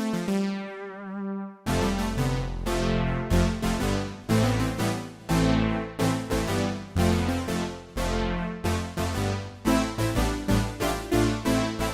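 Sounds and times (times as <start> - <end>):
synthesizer notes: 0.0 - 8.0.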